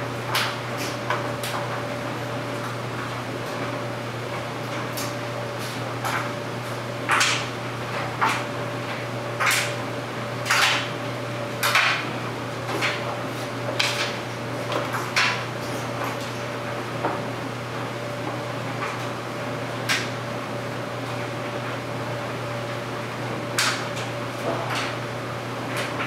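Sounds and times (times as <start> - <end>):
clothes dryer motor hum: 0.0 - 26.0.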